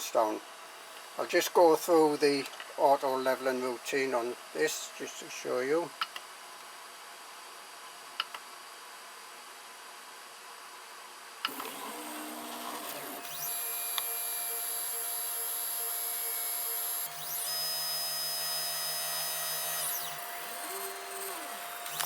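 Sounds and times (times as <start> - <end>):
stepper motors whining: 11.5 - 22.0.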